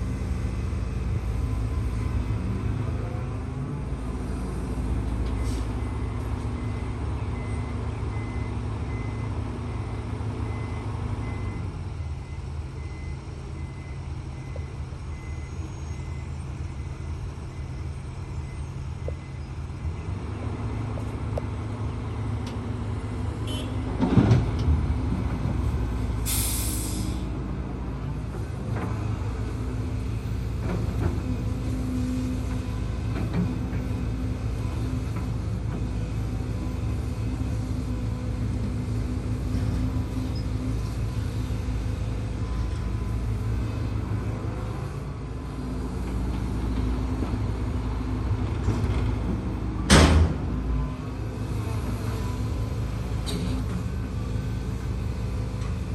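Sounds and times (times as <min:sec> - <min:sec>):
excavator diesel engine running: 0:00.0 - 0:55.9
brief hiss: 0:26.3 - 0:27.3.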